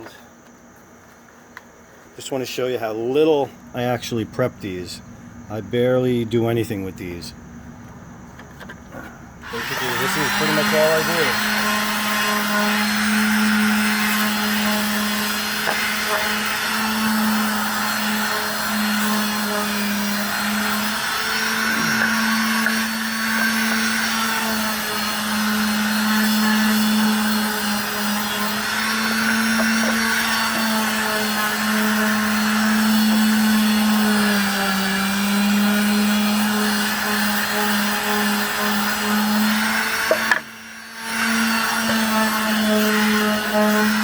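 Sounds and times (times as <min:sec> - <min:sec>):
power tool sanding wood: 0:09.4 - 0:44.0.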